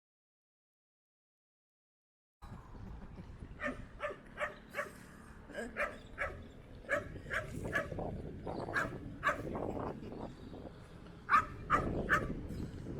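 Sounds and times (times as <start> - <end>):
dog barking: 3.6 - 4.9, 5.8 - 7.9, 8.7 - 9.5, 11.3 - 12.4.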